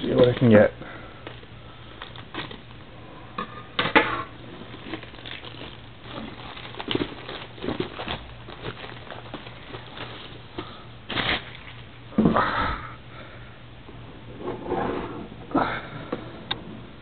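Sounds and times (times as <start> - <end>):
cardboard and wrapper rustling: 4.4 - 11.9.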